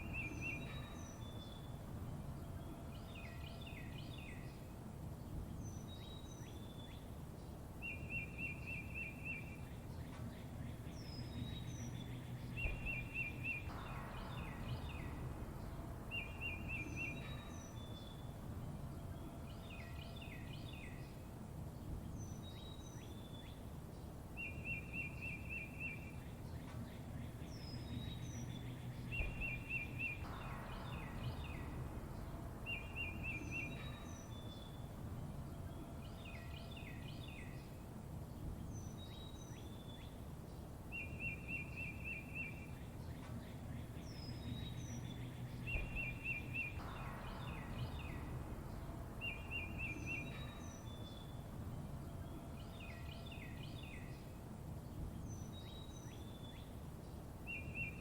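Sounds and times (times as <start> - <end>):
low background rumble: 0.0 - 58.0
songbirds chirping and whistling: 0.0 - 58.0.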